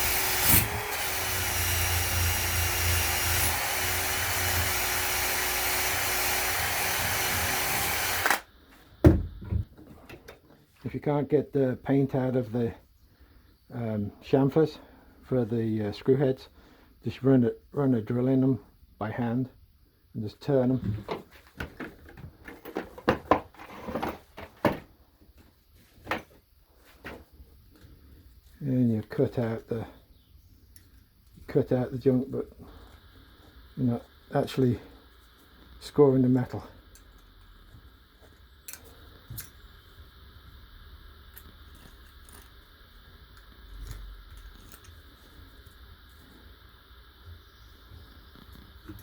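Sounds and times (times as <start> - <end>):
drill bit scraping metal: 0.0 - 8.4.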